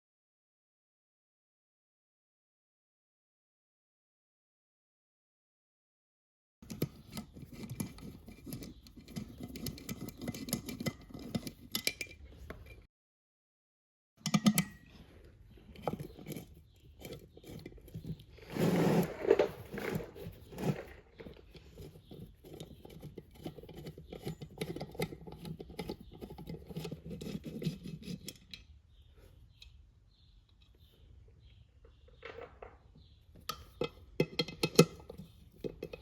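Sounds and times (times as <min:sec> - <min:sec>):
scraping clatter: 0:14.8 - 0:28.6.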